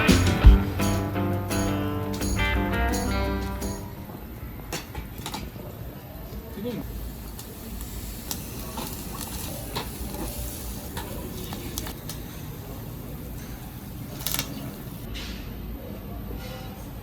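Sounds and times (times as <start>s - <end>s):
utensils and dishes clinking: 0.0s - 5.6s, 7.3s - 15.5s
meat sizzling on a grill: 6.8s - 15.0s.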